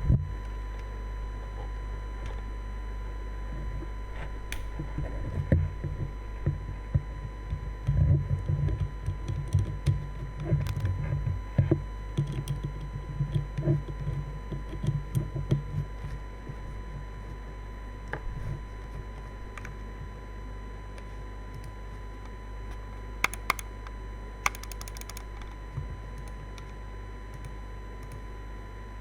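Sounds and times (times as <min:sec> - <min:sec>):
low electrical hum: 0:00.0 - 0:29.0
mechanical keyboard typing: 0:23.2 - 0:26.8.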